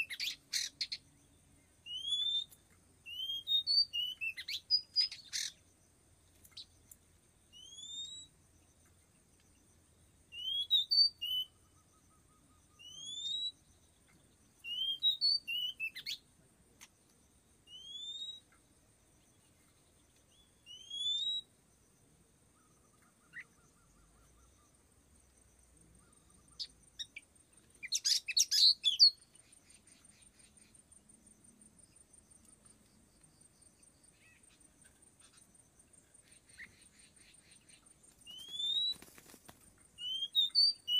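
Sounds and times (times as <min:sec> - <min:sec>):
bird whistling and chattering: 0:00.0 - 0:01.0, 0:01.9 - 0:02.5, 0:03.1 - 0:05.6, 0:10.3 - 0:11.6, 0:12.8 - 0:13.6, 0:14.6 - 0:16.2, 0:17.7 - 0:18.4, 0:20.7 - 0:21.5, 0:27.8 - 0:29.2, 0:36.4 - 0:39.0, 0:40.0 - 0:40.9.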